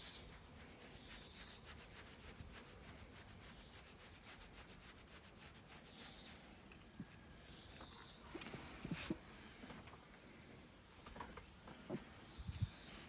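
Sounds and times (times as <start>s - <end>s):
hand rubbing fur: 0.0s - 7.2s.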